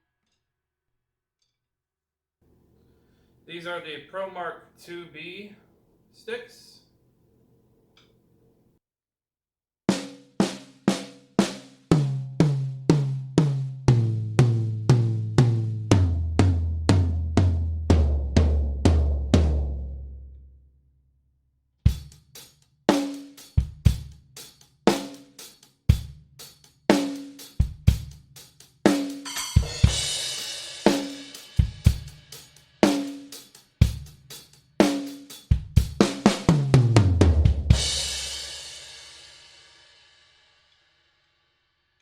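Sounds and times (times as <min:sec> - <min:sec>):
drum fills on toms: 0:09.9 - 0:20.0, 0:21.9 - 0:39.1
kick and snare beat: 0:21.9 - 0:38.4
cymbals: 0:28.9 - 0:36.5, 0:37.7 - 0:40.4.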